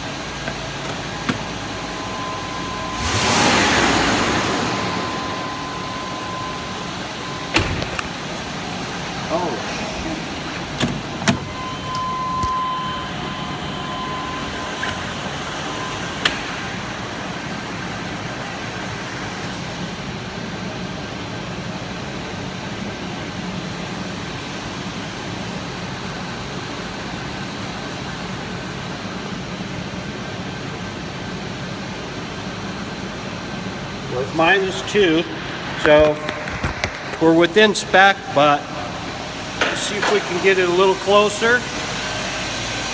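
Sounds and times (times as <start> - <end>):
car engine idling: 0.0 - 20.5
thin high tone: 0.7 - 10.5.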